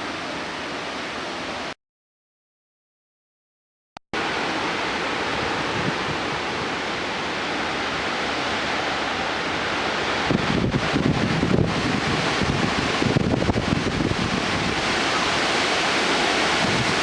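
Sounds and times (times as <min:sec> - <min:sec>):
heavy rain: 0:00.0 - 0:01.8, 0:04.2 - 0:17.0
high wind roaring: 0:04.2 - 0:17.0
wind buffeting microphone: 0:05.3 - 0:06.8, 0:10.0 - 0:17.0.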